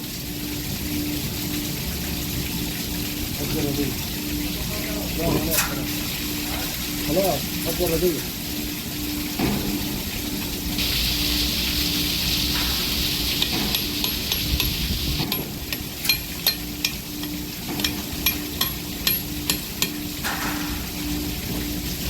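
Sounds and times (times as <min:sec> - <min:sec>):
steady hiss: 0:00.0 - 0:22.0
light metallic taps and clinks: 0:13.4 - 0:20.8.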